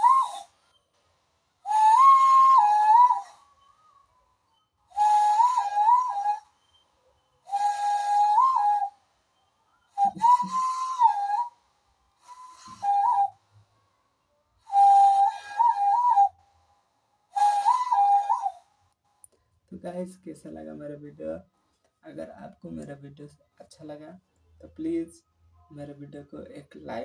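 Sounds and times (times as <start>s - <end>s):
whistle-like blasts through cupped hands: 0.0s - 0.9s, 1.6s - 11.6s, 12.2s - 13.4s, 14.6s - 16.6s, 17.3s - 18.7s.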